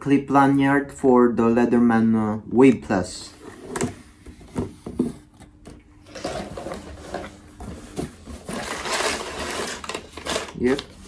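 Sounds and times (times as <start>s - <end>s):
packaging rustling: 6.0s - 11.0s.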